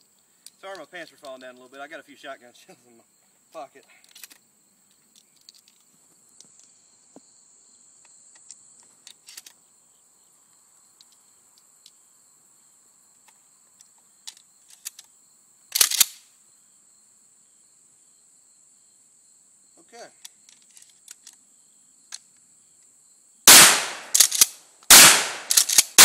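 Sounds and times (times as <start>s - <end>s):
crickets chirring: 0.0s - 26.0s
shotgun handling clicks: 4.0s - 4.4s, 8.4s - 9.6s, 14.2s - 15.1s, 15.7s - 16.2s, 20.2s - 21.4s, 23.5s - 26.0s
loud shotgun shot: 23.5s - 26.0s.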